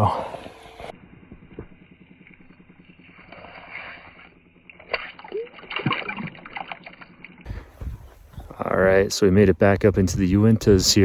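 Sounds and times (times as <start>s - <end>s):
water splashing and sloshing: 3.3s - 8.2s.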